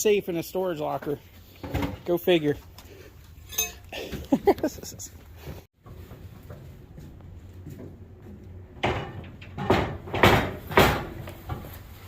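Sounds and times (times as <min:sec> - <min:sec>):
loud knocks and scrapes: 0:08.8 - 0:11.7.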